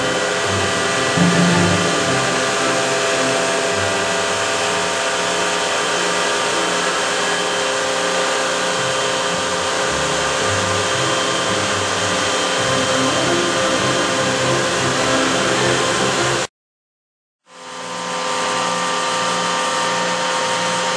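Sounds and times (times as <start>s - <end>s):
router spindle motor milling wood: 0.0s - 16.5s.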